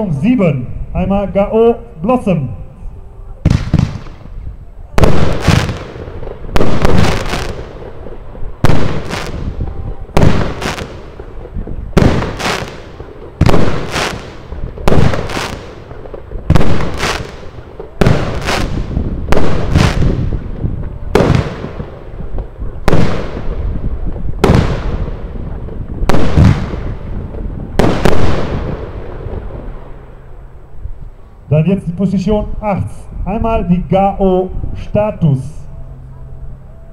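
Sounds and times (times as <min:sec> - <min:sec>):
firework battery bangs: 0:05.0 - 0:30.0.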